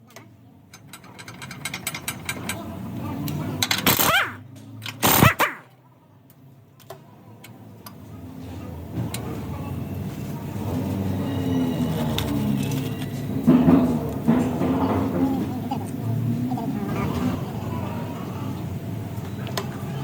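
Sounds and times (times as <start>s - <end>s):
creaking squeals: 9.4s - 20.0s.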